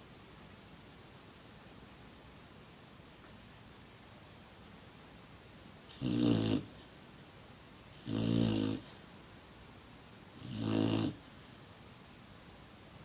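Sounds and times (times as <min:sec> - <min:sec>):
dog snoring: 0:05.9 - 0:06.9, 0:07.9 - 0:09.0, 0:10.4 - 0:11.5.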